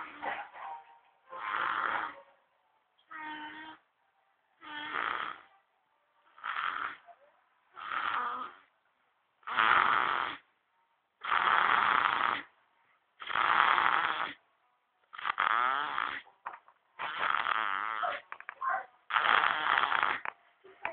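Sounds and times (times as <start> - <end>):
baby snoring: 1.3 - 2.2, 3.1 - 3.9, 4.6 - 5.5, 6.3 - 7.0, 7.7 - 8.7, 9.4 - 10.5, 11.2 - 12.6, 13.2 - 14.4, 15.1 - 16.3, 17.0 - 18.2, 19.1 - 20.3.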